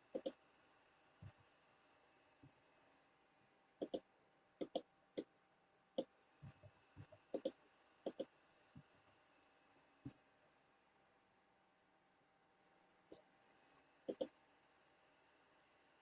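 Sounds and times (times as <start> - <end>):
computer mouse clicking: 0.1 - 0.4, 3.8 - 5.3, 6.0 - 8.4, 14.1 - 14.4
soft low taps: 1.2 - 1.4, 6.4 - 7.2.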